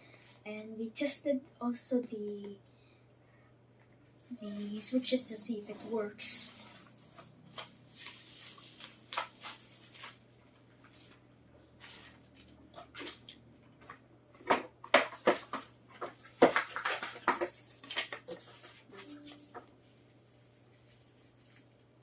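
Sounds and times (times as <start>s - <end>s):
packaging clicks and rustles: 11.8s - 18.8s.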